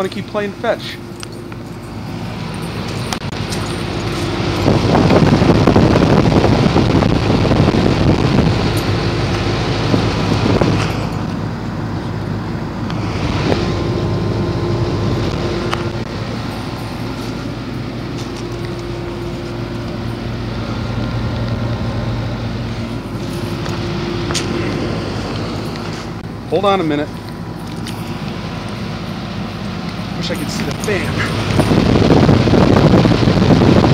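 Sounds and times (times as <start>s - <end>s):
air conditioner unit humming: 0.0s - 33.9s
loud rushing noise: 12.6s - 26.8s, 30.0s - 33.9s.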